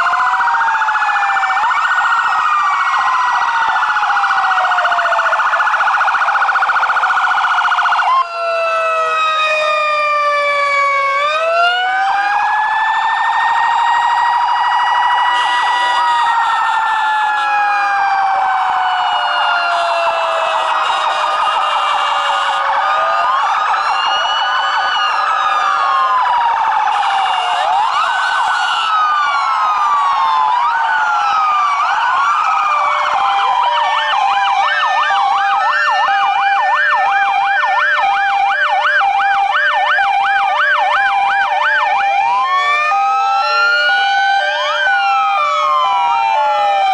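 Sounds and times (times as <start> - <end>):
electronic sirens: 0.0 - 46.9.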